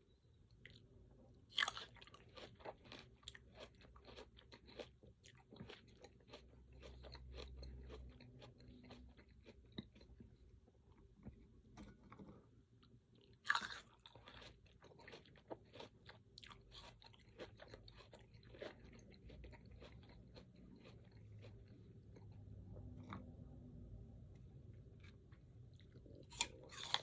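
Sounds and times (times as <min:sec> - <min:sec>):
crunchy chewing: 0:01.5 - 0:11.4, 0:12.8 - 0:23.4, 0:24.9 - 0:27.0
crunching bite: 0:26.3 - 0:27.0.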